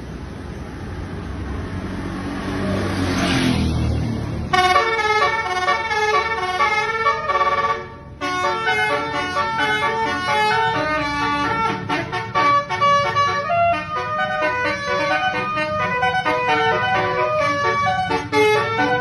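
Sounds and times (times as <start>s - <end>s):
bus engine revving: 0.0s - 19.0s
multi-tone bus horn tune: 4.4s - 19.0s.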